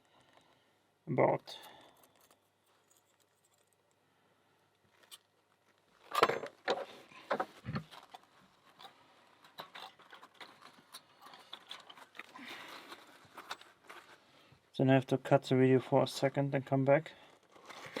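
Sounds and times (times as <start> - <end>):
soft rustling: 6.8 - 14.7.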